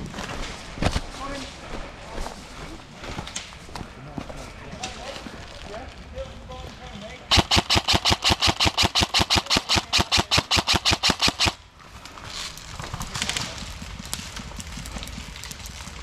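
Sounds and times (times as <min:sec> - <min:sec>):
airsoft gun full-auto burst: 0:07.3 - 0:11.6.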